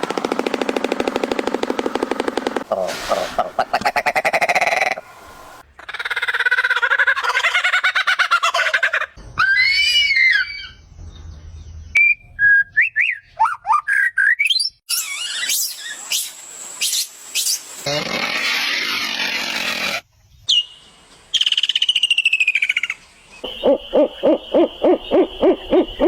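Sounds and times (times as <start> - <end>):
rising whistled notes: 11.8 - 17.6.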